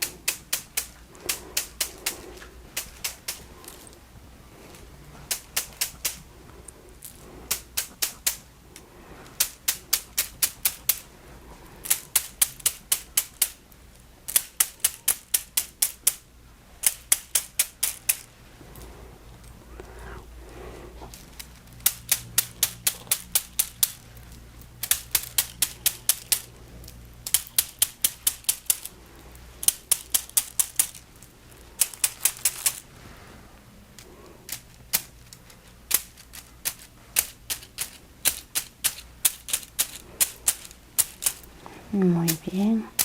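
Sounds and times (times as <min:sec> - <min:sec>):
massage rods clicking and tapping: 0:00.0 - 0:04.0, 0:04.7 - 0:11.1, 0:11.8 - 0:29.0, 0:29.6 - 0:32.8, 0:33.9 - 0:43.0.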